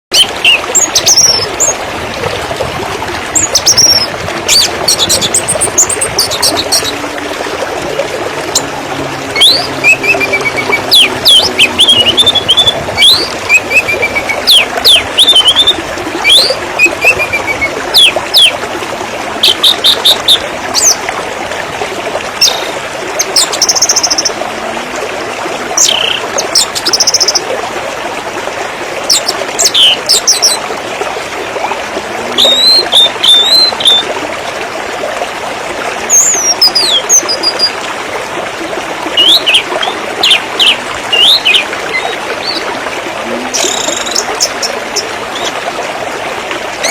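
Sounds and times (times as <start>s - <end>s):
river water flowing: 0.1s - 46.9s.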